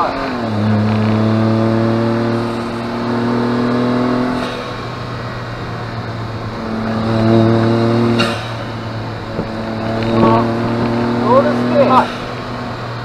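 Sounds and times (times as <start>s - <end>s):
car engine from inside cabin: 0.0s - 13.0s.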